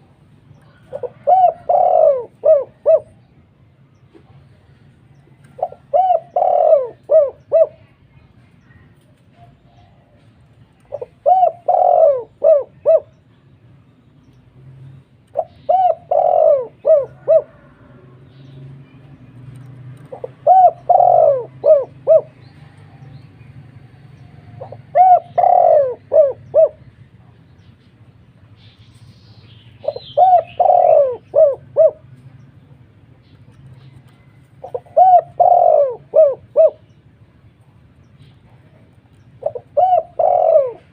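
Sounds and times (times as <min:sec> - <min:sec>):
dove cooing: 0:00.5 - 0:03.5, 0:05.5 - 0:08.0, 0:10.8 - 0:13.3, 0:15.3 - 0:18.3, 0:19.5 - 0:23.2, 0:24.2 - 0:27.5, 0:29.8 - 0:32.4, 0:33.7 - 0:37.0, 0:38.4 - 0:40.9.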